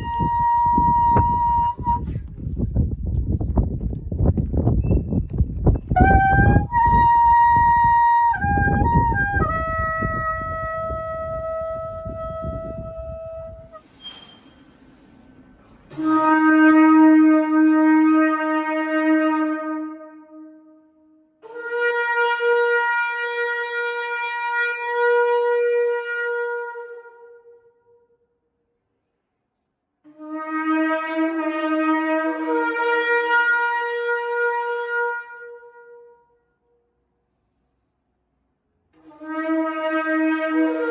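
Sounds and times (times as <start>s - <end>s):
shofar blowing: 0.0s - 2.3s, 5.8s - 14.7s, 15.9s - 28.4s, 30.1s - 36.7s, 39.0s - 40.9s.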